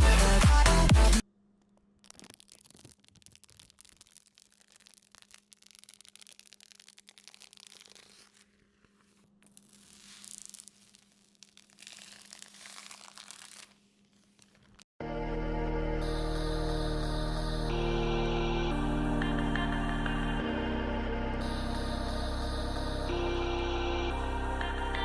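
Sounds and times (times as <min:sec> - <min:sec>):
background music: 0:00.0 - 0:01.2, 0:15.0 - 0:25.0.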